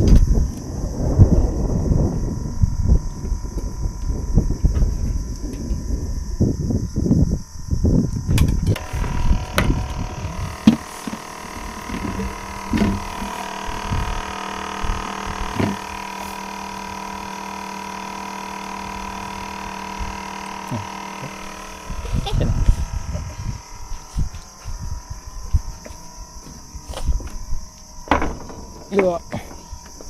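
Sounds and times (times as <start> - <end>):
gusty rumbling buffets: 0.0 - 17.7, 18.7 - 30.0
steady hum: 0.0 - 30.0
scattered knocks: 28.0 - 30.0.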